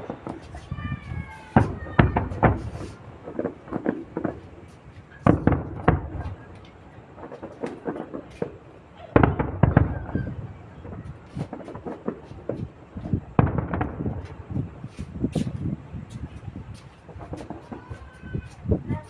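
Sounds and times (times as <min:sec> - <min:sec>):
fireworks booming and crackling: 0:00.0 - 0:19.0.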